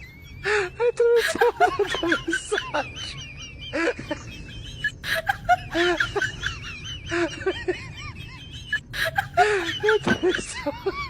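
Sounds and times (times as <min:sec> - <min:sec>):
bird calling with high trill: 0:00.0 - 0:07.2.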